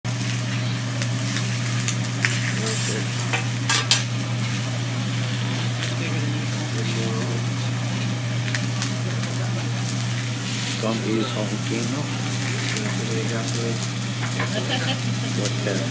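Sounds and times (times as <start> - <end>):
food sizzling on a griddle: 0.1 - 15.9
metal utensils clicking: 2.5 - 4.2.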